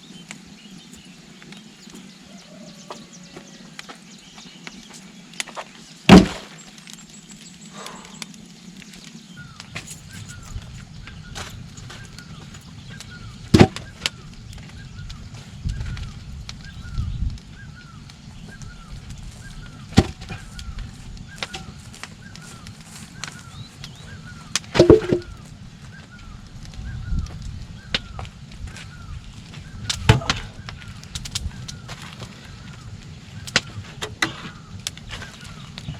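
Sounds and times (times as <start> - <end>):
sharp knocks: 24.8 - 25.3.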